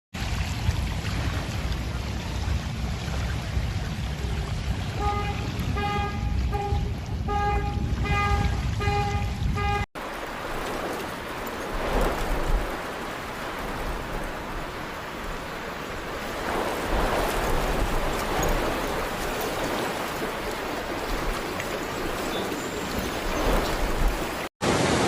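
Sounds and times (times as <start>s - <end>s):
floodwater rushing: 0.2s - 25.0s
vehicle horn beeping: 5.0s - 9.9s.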